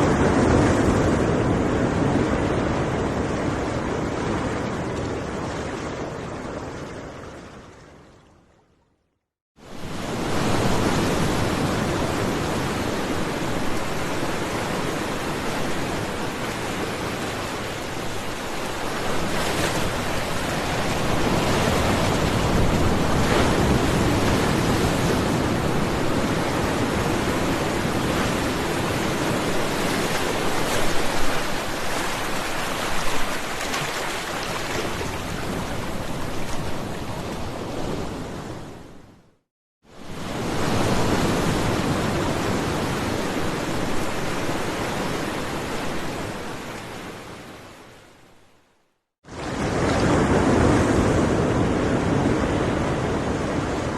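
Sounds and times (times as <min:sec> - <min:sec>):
ocean waves breaking: 0:09.6 - 0:39.1, 0:39.9 - 0:48.3, 0:49.2 - 0:53.9.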